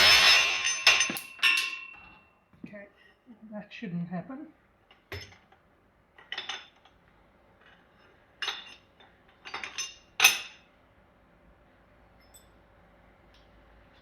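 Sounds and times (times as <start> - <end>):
metal tools clinking: 0.0 - 2.2.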